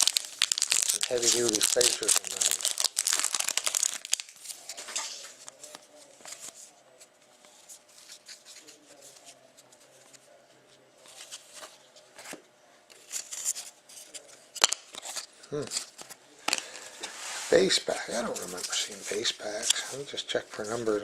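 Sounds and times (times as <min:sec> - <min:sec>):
cards and wrapper rustling: 0:00.0 - 0:06.6, 0:13.0 - 0:20.0.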